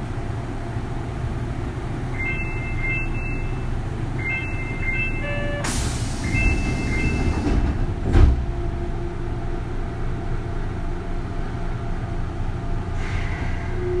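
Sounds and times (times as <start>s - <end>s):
train car rumble: 0.0s - 14.0s
electronic chime tones: 4.2s - 5.6s.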